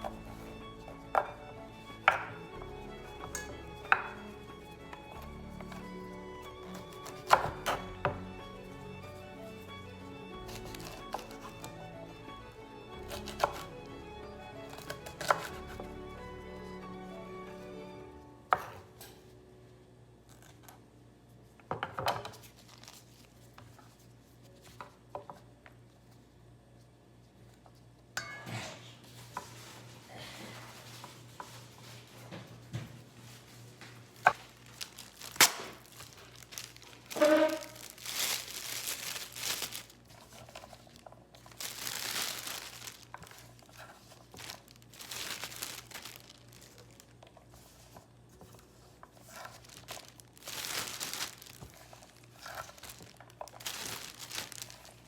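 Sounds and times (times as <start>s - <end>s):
plastic packaging crinkling: 10.4s - 11.7s, 22.3s - 24.0s, 34.0s - 55.0s.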